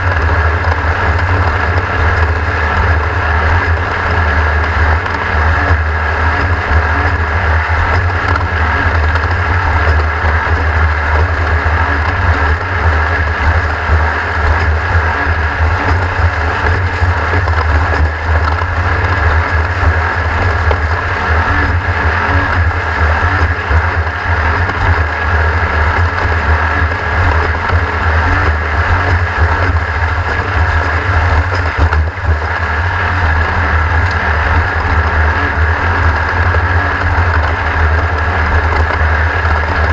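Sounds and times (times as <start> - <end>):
race vehicle engine running: 0.0 - 39.9
wind rumble on microphone: 0.0 - 39.9.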